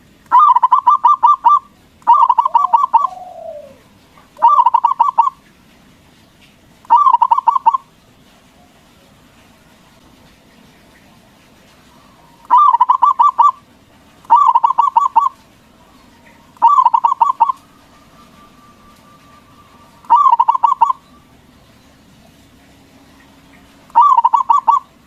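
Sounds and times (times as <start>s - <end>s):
dove cooing pulsing notes: 0.3s - 5.5s, 6.8s - 7.9s, 11.8s - 25.0s.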